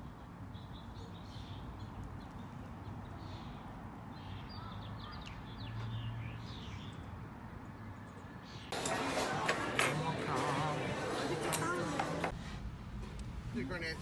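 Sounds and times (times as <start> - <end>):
small birds chirping: 0.0 - 8.8.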